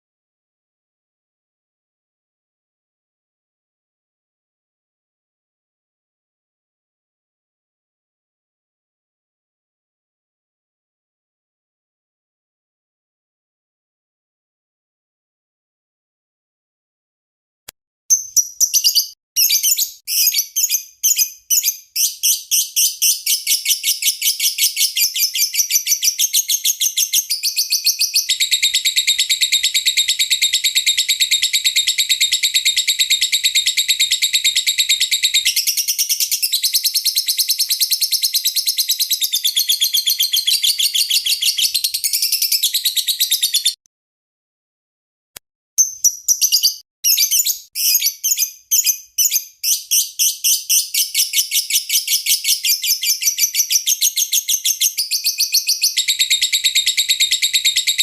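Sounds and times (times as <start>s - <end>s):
lovebird chirping: 18.1s - 43.8s, 45.8s - 58.0s.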